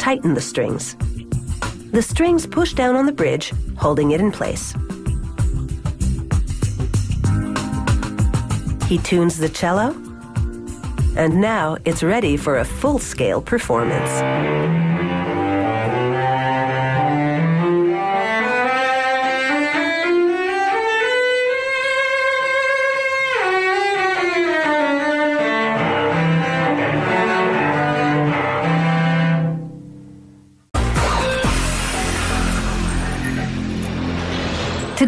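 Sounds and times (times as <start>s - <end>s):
cello bowed melody: 12.4s - 30.2s.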